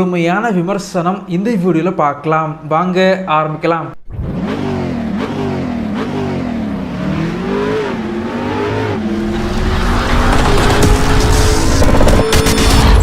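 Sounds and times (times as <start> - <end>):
engine revving: 4.0 - 13.0
rushing noise: 8.4 - 13.0.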